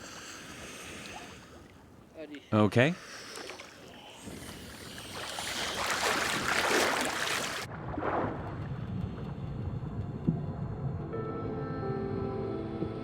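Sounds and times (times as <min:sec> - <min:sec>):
water sloshing and splashing: 0:03.0 - 0:08.6
low rumble: 0:07.7 - 0:12.8.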